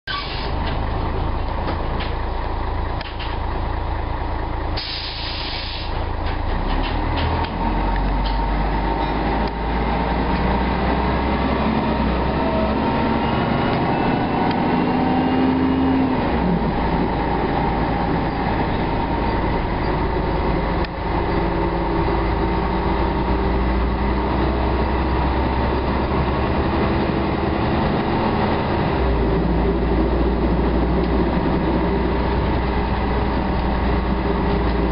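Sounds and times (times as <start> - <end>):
diesel bus engine running: 0.1 - 34.9
air hiss: 4.8 - 6.0
rising tone: 8.6 - 33.0.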